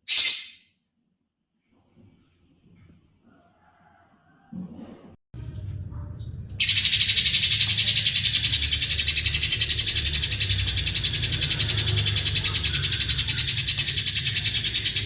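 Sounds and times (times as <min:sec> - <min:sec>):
lovebird chirps: 0:00.0 - 0:00.7
lovebird rattling trill: 0:00.0 - 0:00.7, 0:06.6 - 0:15.0.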